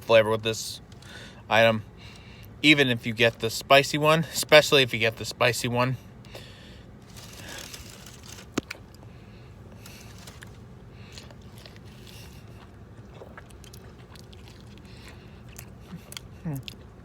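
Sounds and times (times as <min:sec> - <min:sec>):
person chewing food: 0:06.3 - 0:17.0
sharp crunch of food: 0:07.0 - 0:09.1, 0:09.7 - 0:16.9.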